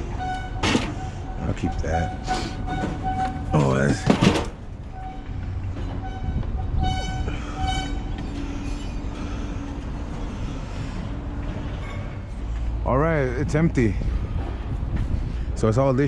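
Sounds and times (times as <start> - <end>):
horn blasts: 0.0 - 8.8
heavy machinery rumbling: 0.0 - 16.0.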